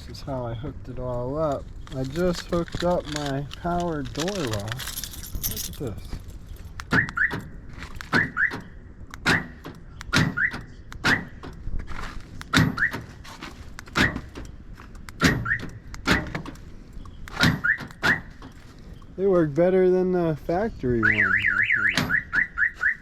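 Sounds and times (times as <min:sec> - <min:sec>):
car alarm chirps: 0:06.9 - 0:11.6, 0:12.5 - 0:13.2, 0:13.9 - 0:14.4, 0:15.1 - 0:16.4, 0:17.0 - 0:19.1, 0:20.9 - 0:23.0
door locks thunking: 0:21.9 - 0:22.6.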